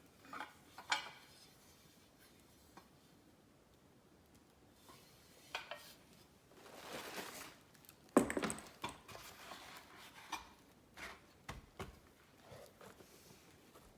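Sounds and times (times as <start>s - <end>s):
packaging rustle: 6.5s - 8.0s
solid knock of object set down: 8.2s - 8.9s.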